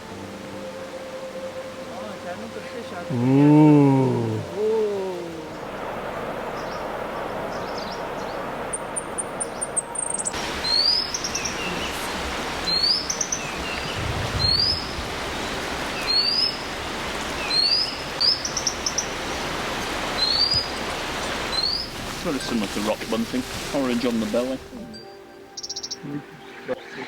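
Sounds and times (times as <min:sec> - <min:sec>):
steady hiss: 0:10.3 - 0:25.0
bird calling: 0:17.3 - 0:27.0.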